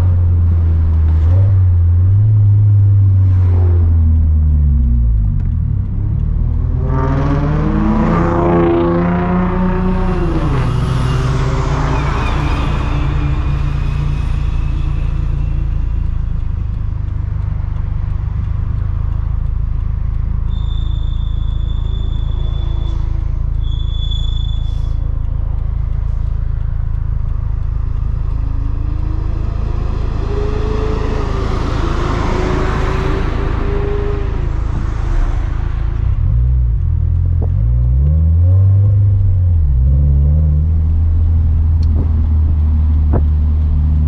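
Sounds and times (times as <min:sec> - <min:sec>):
car engine running: 0:00.0 - 0:44.0
road noise: 0:00.0 - 0:44.0
high steady whistles: 0:10.7 - 0:16.6, 0:20.4 - 0:25.5.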